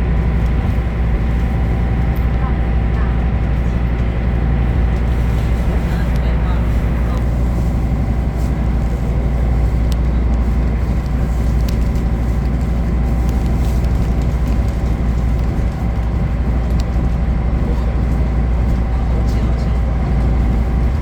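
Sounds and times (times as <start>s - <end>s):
boat engine droning: 0.0s - 21.0s.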